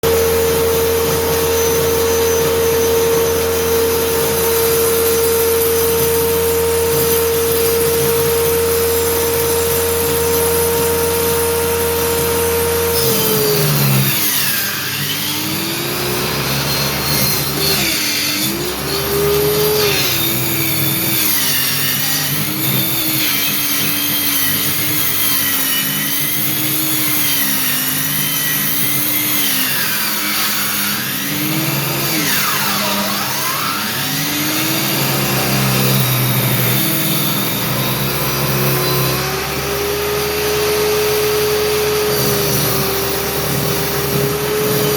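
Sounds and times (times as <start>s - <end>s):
circular saw whining: 0.0s - 44.9s
saw blade cutting board: 0.0s - 44.9s.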